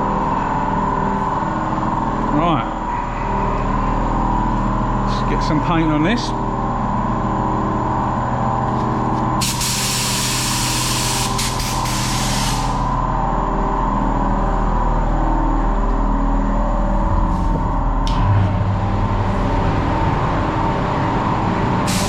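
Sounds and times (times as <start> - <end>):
mechanical hum: 0.0 - 22.0
paint spray gun hissing: 9.4 - 12.9.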